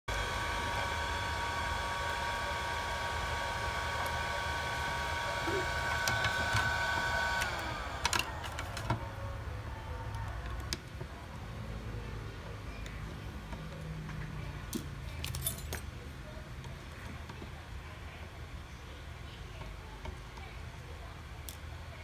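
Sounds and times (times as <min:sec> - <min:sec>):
small electric motor whining: 0:00.1 - 0:09.2.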